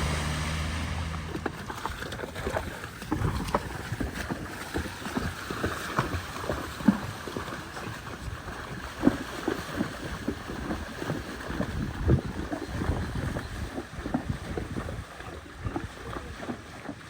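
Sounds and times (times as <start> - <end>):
water splashing and sloshing: 0.0 - 17.0
wind buffeting microphone: 10.4 - 16.4.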